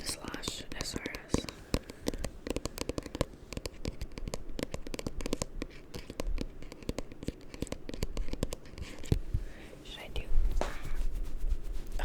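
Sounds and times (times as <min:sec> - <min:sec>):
hands scratching at microphone: 0:10.5 - 0:12.0.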